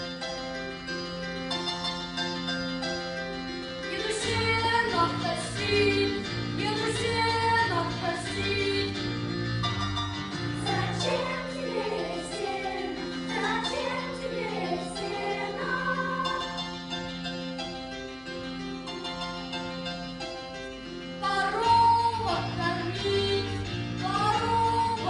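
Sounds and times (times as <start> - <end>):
children's choir singing: 3.9 - 9.3, 10.4 - 17.1, 21.2 - 25.0.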